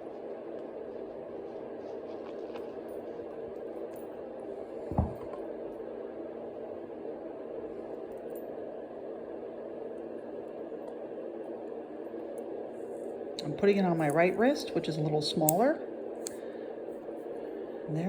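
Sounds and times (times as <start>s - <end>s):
room hum: 0.0s - 18.0s
dull thump: 4.9s - 5.4s.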